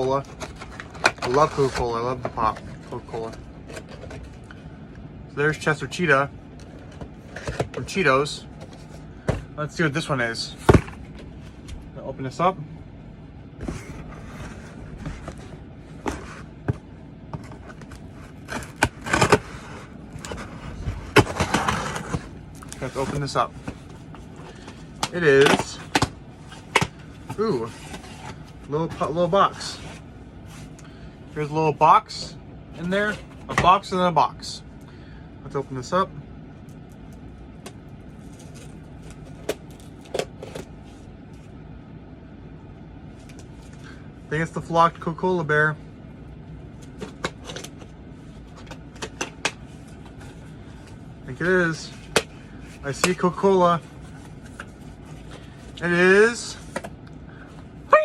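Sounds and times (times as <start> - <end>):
cardboard scraping and rustling: 0.0 - 4.4, 13.6 - 30.8, 46.8 - 57.0
steady low hum: 0.0 - 58.0.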